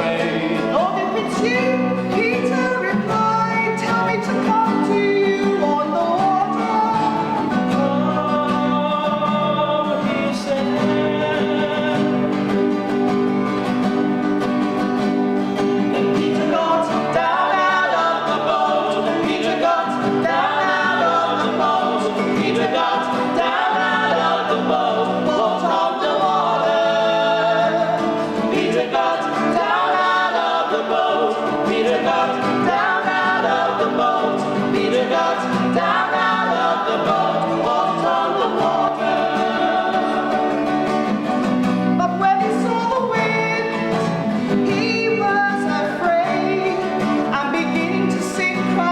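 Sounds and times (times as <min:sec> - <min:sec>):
acoustic guitar: 0:00.0 - 0:48.9
voices singing: 0:00.0 - 0:48.9.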